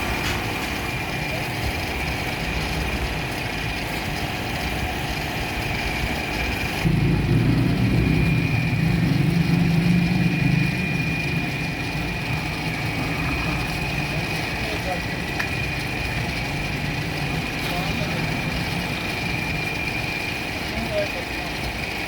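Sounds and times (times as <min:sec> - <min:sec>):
loud low hum: 0:00.0 - 0:22.0
motor high whine: 0:00.0 - 0:22.0.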